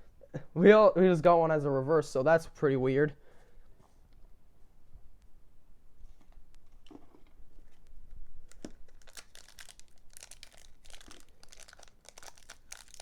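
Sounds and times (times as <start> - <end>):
foil wrapper crinkling: 8.4 - 13.0.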